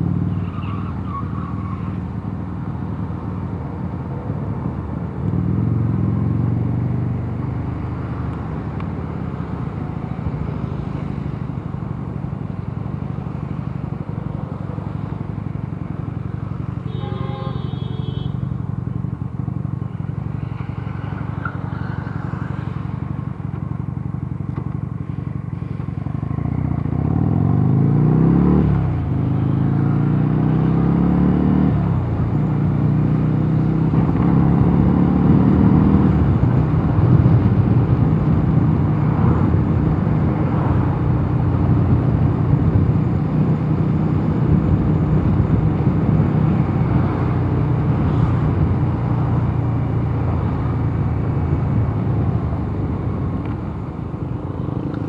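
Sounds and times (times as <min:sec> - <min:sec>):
road and wind rumble: 0:00.0 - 0:55.0
motorcycle engine accelerating: 0:05.3 - 0:16.4, 0:22.7 - 0:55.0.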